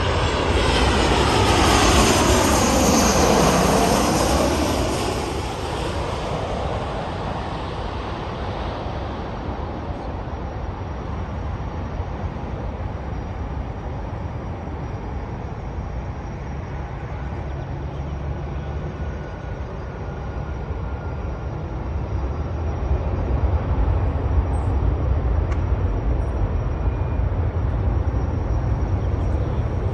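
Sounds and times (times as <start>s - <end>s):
jet airliner engine whine: 0.0s - 29.9s
low jet rumble: 0.0s - 29.9s.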